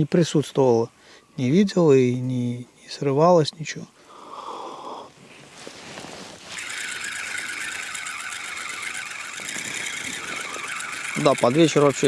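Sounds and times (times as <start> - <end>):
fishing reel whirring: 6.5 - 12.0.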